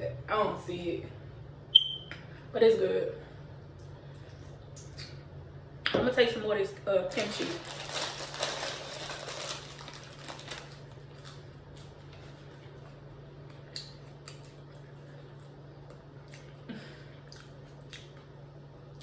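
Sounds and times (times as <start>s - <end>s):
steady low hum: 0.0s - 19.0s
eating clicks and crunches: 13.4s - 16.6s.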